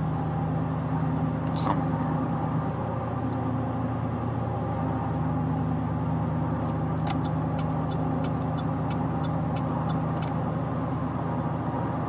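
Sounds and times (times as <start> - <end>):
engine and road noise: 0.0 - 12.0
regular ticking: 7.1 - 10.4.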